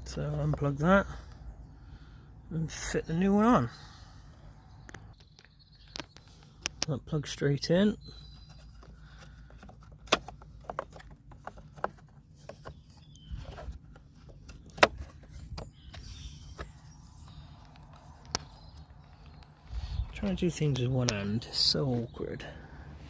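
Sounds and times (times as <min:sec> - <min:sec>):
hands handling plastic light: 0:08.3 - 0:19.5.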